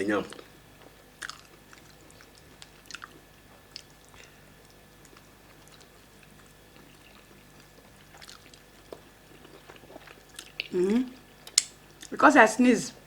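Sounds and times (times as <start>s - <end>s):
low room hum: 0.0s - 13.0s
faint chewing: 0.2s - 12.2s
soft mouth clicks: 11.5s - 11.8s.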